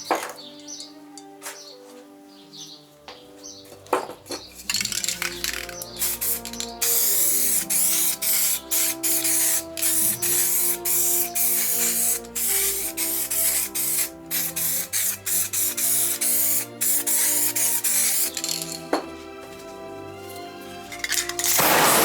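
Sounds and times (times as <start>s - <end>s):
background music: 0.0s - 22.0s
spray paint can hissing: 4.5s - 18.9s, 21.0s - 22.0s.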